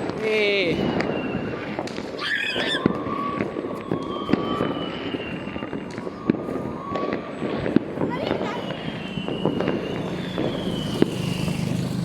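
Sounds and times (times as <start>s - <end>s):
firecrackers crackling: 0.0s - 12.0s
fireworks bangs: 0.0s - 12.0s
whistling fireworks: 0.0s - 12.0s
shrill screech: 2.2s - 3.4s, 8.1s - 12.0s.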